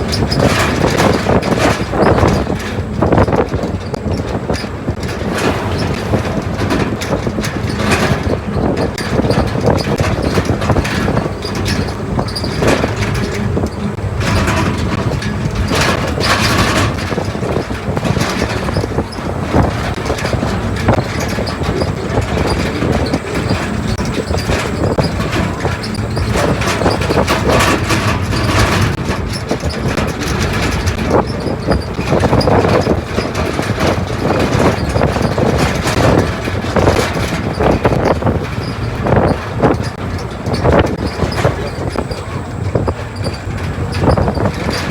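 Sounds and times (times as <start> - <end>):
airliner cabin engine noise: 0.0 - 44.9
rumbling and rattling surges: 0.0 - 44.9.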